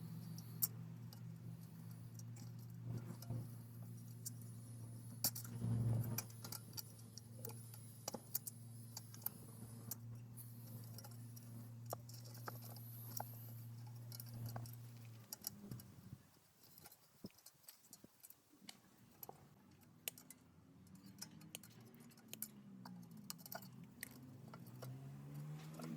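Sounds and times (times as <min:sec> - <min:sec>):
steady low hum: 0:00.0 - 0:17.4
light clicks taps and clinks: 0:05.2 - 0:25.9.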